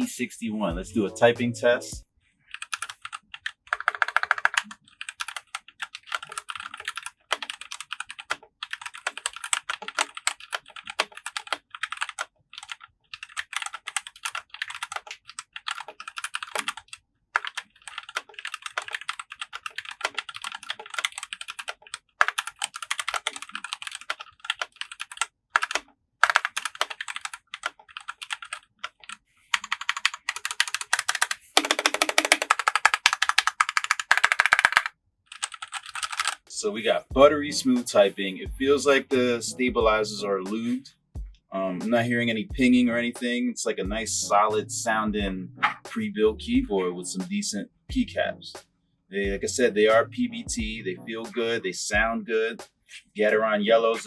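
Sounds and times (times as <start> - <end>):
mechanical keyboard typing: 2.6 - 36.5.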